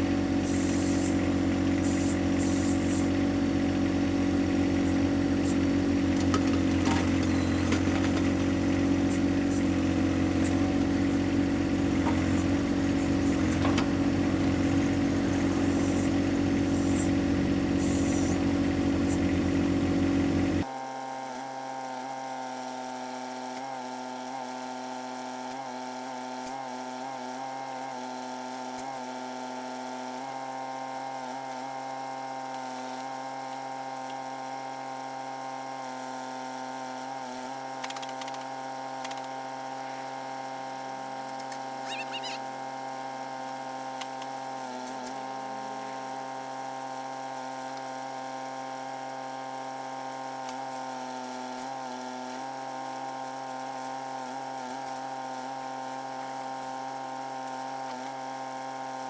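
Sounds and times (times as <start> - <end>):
tractor diesel engine: 0.0 - 20.6.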